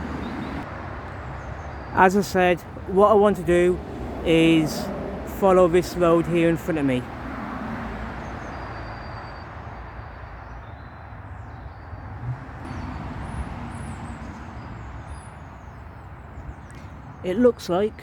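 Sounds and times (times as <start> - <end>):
road traffic hum: 0.0 - 18.0.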